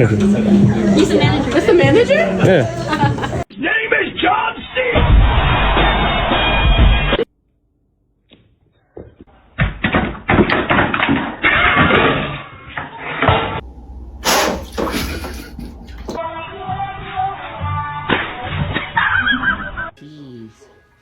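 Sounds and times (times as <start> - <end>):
brief hiss: 14.2 - 15.5.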